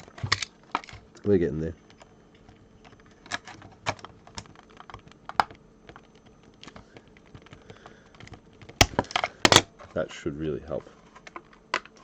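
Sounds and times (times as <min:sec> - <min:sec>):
plastic packaging clicking and snapping: 0:01.9 - 0:09.7, 0:11.2 - 0:12.0.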